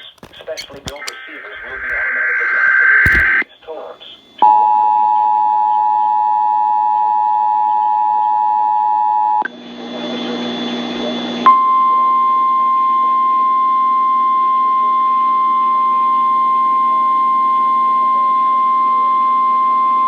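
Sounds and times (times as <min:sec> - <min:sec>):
radio hiss: 0:00.0 - 0:04.4.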